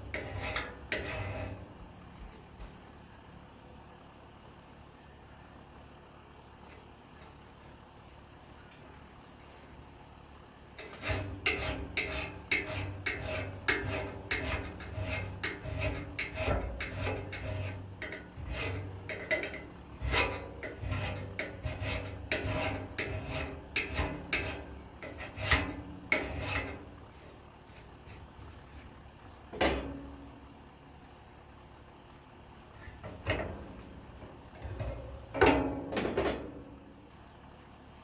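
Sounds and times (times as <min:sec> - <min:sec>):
metal file rasping on axe edge: 0:00.1 - 0:01.6, 0:10.8 - 0:26.9.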